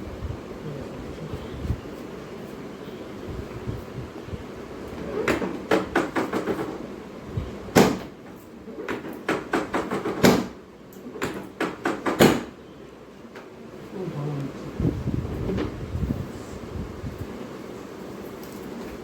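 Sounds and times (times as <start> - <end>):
sharp knocks and slaps: 5.3 - 6.8, 7.8 - 8.1, 8.9 - 10.6.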